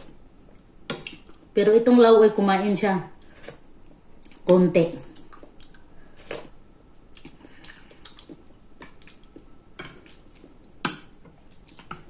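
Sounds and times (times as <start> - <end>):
chewing: 7.1 - 10.8, 11.5 - 12.0.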